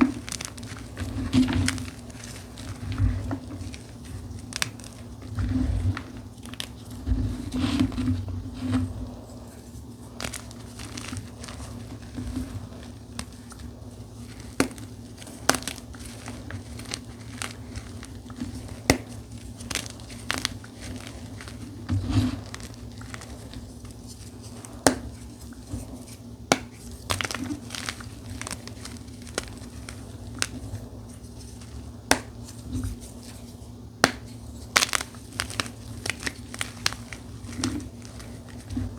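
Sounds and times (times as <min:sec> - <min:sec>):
chalk crackling and snapping: 0:00.0 - 0:08.0, 0:08.6 - 0:38.9
chalk being crushed: 0:00.0 - 0:38.9.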